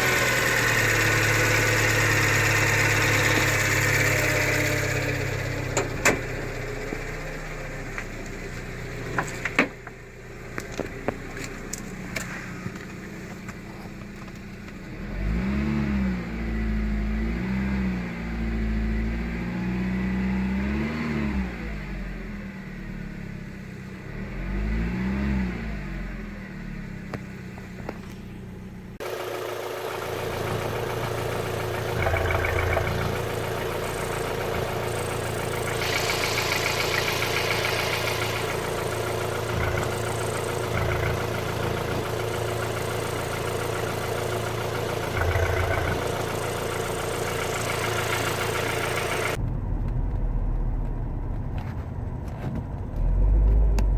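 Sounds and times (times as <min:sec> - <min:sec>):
car engine revving: 0:00.0 - 0:08.1, 0:14.8 - 0:22.2, 0:29.0 - 0:53.9
constant whine: 0:29.1 - 0:53.9.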